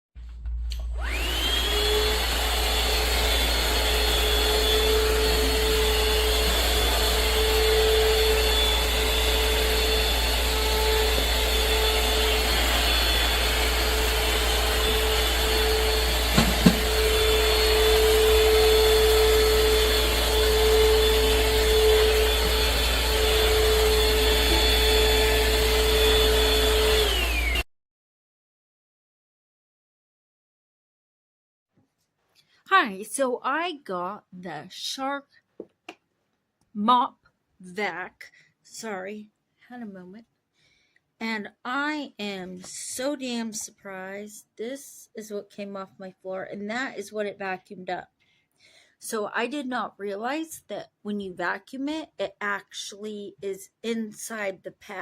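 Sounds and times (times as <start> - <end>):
vacuum mop motor whining: 0.4 - 27.7.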